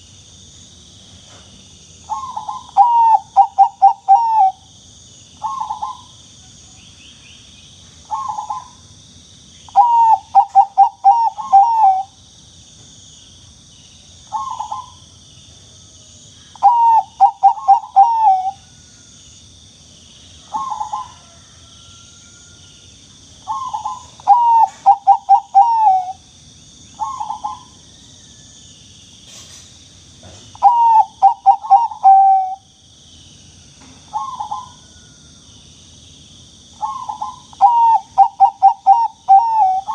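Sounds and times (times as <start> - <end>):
steady high hiss: 0.0 - 14.4
dove cooing: 2.1 - 4.6, 5.4 - 6.1, 8.1 - 8.8, 9.7 - 12.1, 14.3 - 15.0, 16.6 - 18.6, 20.5 - 21.4, 23.4 - 26.2, 27.0 - 27.8, 30.6 - 32.7, 34.1 - 34.9, 36.8 - 39.9.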